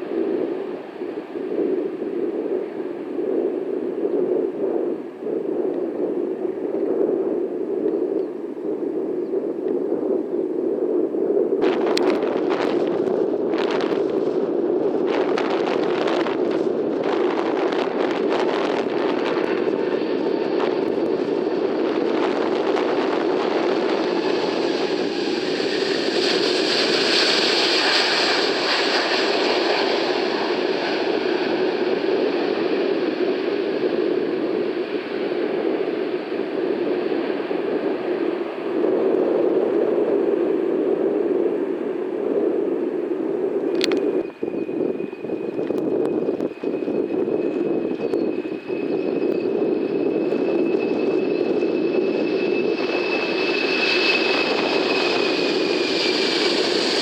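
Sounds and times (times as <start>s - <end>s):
jet airliner passing: 0.0s - 57.0s.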